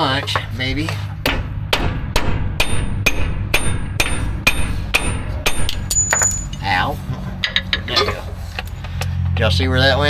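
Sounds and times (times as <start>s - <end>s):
hammer striking steel punch: 0.0s - 6.8s.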